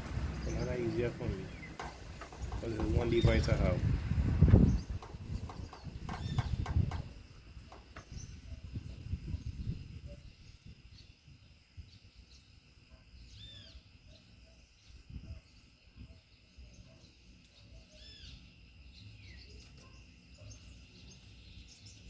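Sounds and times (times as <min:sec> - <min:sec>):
bird calls: 0:00.0 - 0:11.2, 0:12.0 - 0:22.0
wind rumble on microphone: 0:00.0 - 0:12.2, 0:14.9 - 0:16.2
high insect drone: 0:00.0 - 0:22.0.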